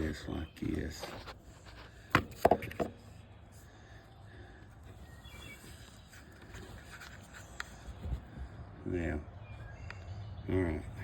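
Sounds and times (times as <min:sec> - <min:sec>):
faint bird chirp: 0:03.0 - 0:11.0.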